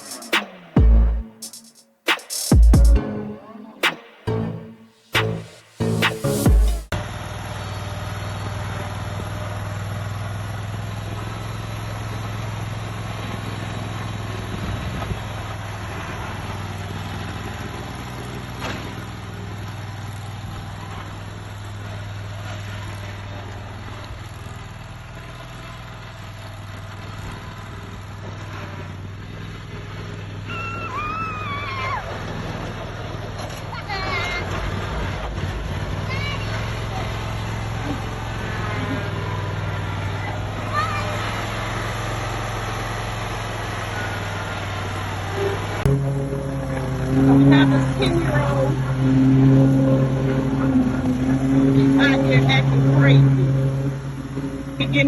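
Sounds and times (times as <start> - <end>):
lawn mower engine humming: 2.7 - 55.0.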